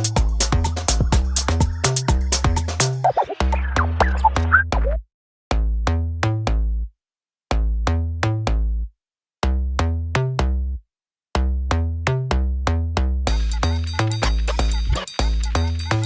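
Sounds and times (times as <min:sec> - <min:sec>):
electronic music with heavy bass: 0:00.0 - 0:05.0, 0:12.8 - 0:16.0.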